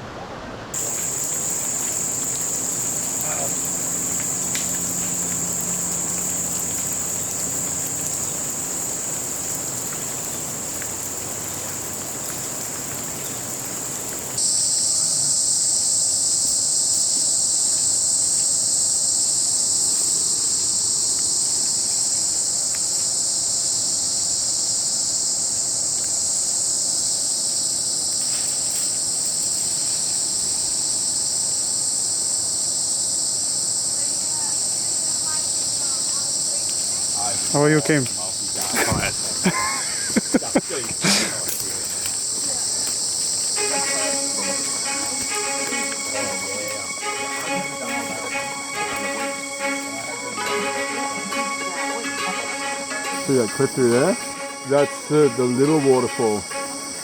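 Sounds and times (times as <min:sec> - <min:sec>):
insect chorus drone: 0:00.8 - 0:57.0.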